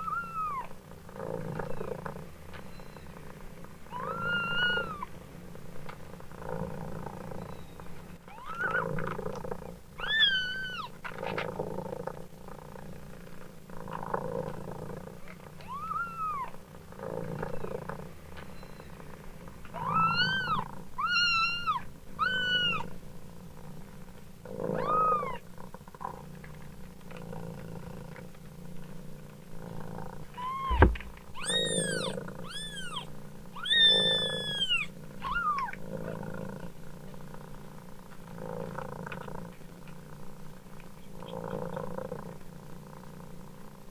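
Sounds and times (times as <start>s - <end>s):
kitten mewing: 0.0s - 0.7s, 3.9s - 5.1s, 15.6s - 16.5s, 19.8s - 22.9s, 24.8s - 25.4s, 30.4s - 35.8s
cat purring: 0.0s - 43.9s
sharp knock: 30.7s - 31.1s.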